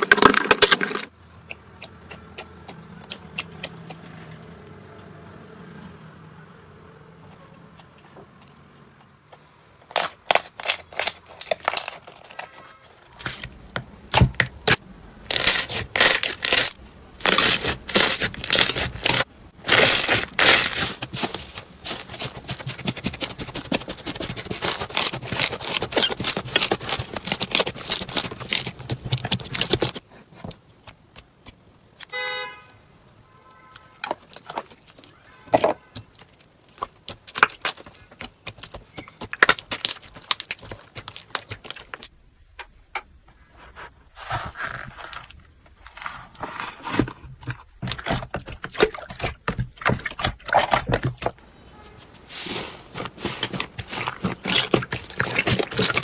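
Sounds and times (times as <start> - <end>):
slime crackling and popping: 10.0 - 12.5, 13.1 - 30.0, 36.2 - 42.1, 52.2 - 56.0
slime squeak: 15.3 - 30.0.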